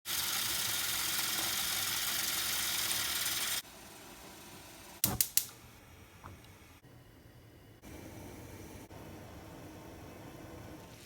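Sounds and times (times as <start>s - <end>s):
tap water running into pot: 0.1s - 3.6s.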